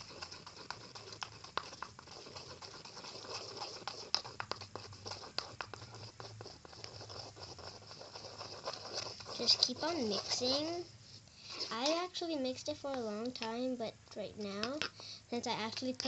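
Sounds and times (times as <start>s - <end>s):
utensil clicking against bowl: 14.4s - 15.0s.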